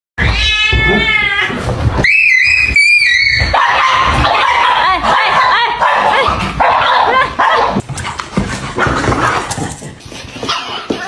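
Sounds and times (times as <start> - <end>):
animal shrill cries and yelps: 0.2 - 3.8.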